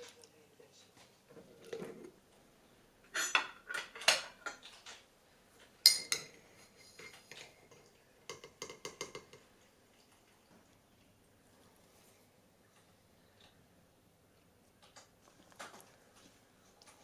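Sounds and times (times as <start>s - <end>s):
utensils and dishes clinking: 3.0s - 5.1s, 5.8s - 9.4s.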